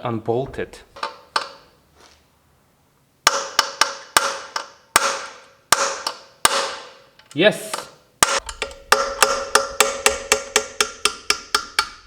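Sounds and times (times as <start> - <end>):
hammer striking metal: 3.3 - 7.0, 7.7 - 12.0.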